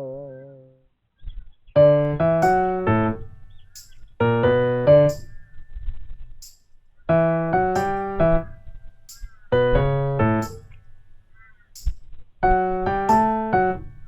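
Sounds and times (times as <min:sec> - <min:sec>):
electric piano chords: 0:01.8 - 0:03.6, 0:04.2 - 0:05.4, 0:07.1 - 0:08.8, 0:09.5 - 0:10.8, 0:12.4 - 0:14.0.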